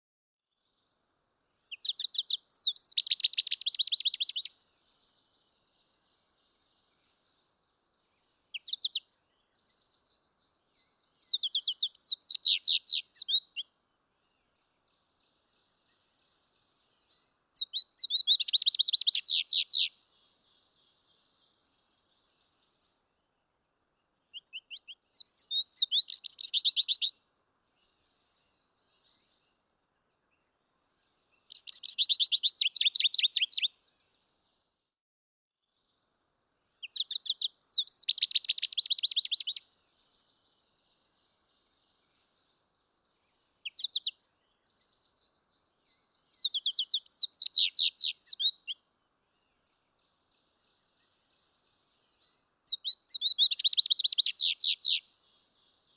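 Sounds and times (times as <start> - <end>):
songbird trilling: 1.7 - 4.6, 8.5 - 9.1, 11.2 - 13.6, 17.6 - 19.9, 24.3 - 27.1, 31.5 - 33.7, 36.8 - 39.7, 43.6 - 44.2, 46.4 - 48.8, 52.6 - 55.0.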